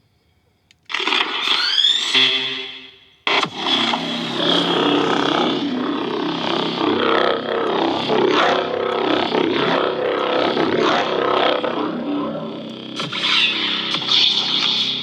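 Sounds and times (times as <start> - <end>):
toy lightsaber electronic hum: 3.4 - 15.0.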